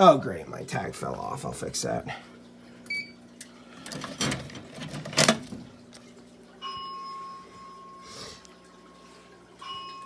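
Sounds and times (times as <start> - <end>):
fire alarm electronic tone: 6.6 - 8.2.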